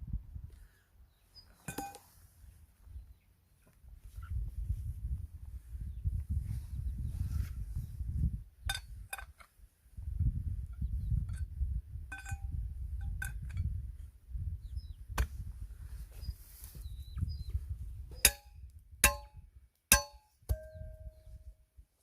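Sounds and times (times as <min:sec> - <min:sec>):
axe splitting firewood: 0:18.1 - 0:21.0.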